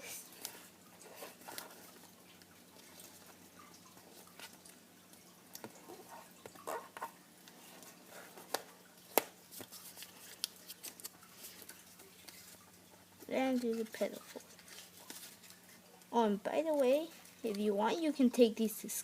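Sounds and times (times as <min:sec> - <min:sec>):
paper being folded and creased: 0:00.4 - 0:02.1, 0:05.9 - 0:12.6.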